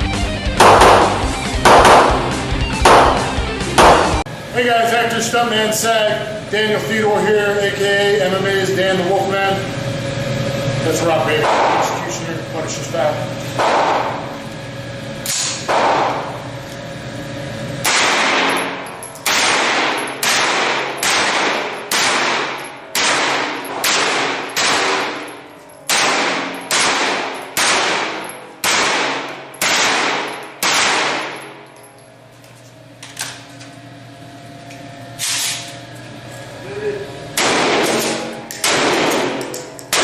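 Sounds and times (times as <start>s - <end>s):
pistol shots with echo: 0.6s - 4.2s, 11.4s - 12.0s, 13.6s - 14.2s, 15.4s - 16.3s, 17.8s - 31.6s, 37.4s - 40.0s.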